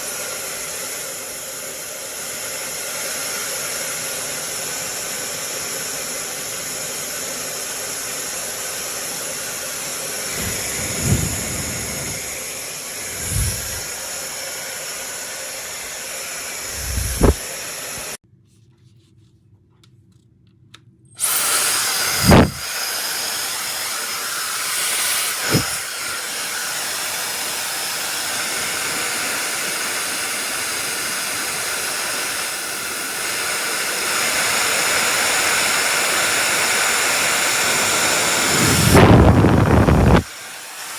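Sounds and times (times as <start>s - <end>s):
hair dryer blowing: 0.0s - 18.2s, 21.2s - 40.9s
short low thumps: 10.4s - 12.2s, 13.2s - 13.9s, 16.8s - 17.4s.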